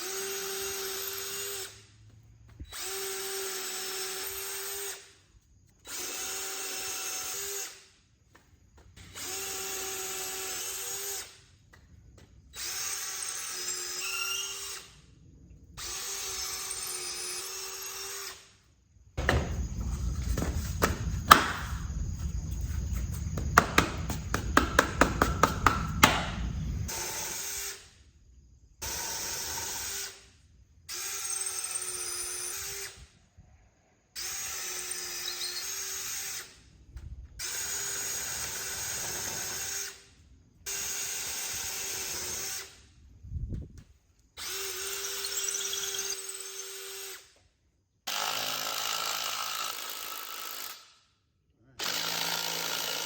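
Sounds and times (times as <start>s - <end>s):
power drill boring into wood: 0.0s - 1.9s, 2.6s - 5.2s, 5.8s - 7.9s, 9.0s - 11.4s, 12.5s - 15.0s, 15.8s - 18.5s, 26.9s - 27.9s, 28.8s - 30.3s, 30.9s - 33.1s, 34.2s - 36.6s, 37.4s - 40.1s, 40.7s - 42.8s, 44.4s - 47.4s, 48.1s - 51.0s, 51.8s - 53.0s.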